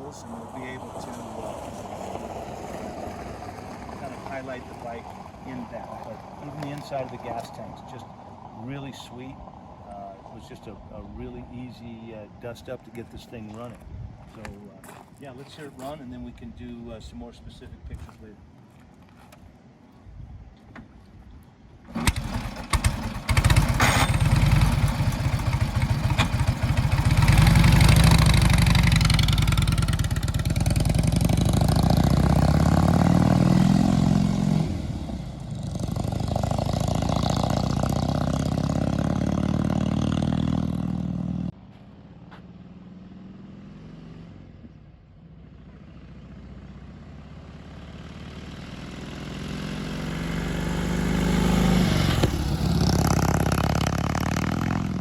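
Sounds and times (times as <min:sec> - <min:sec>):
motorcycle engine starting and revving: 0:00.0 - 0:08.5, 0:21.8 - 0:41.6, 0:42.3 - 0:55.0.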